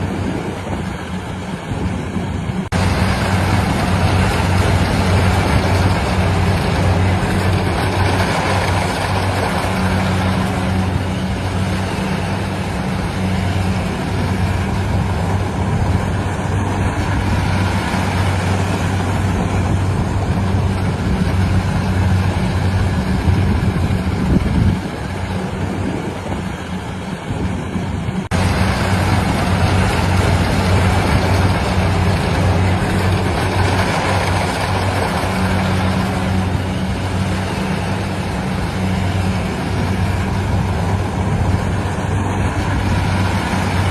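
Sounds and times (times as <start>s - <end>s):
harvesting machine engine drone: 0.0s - 43.9s.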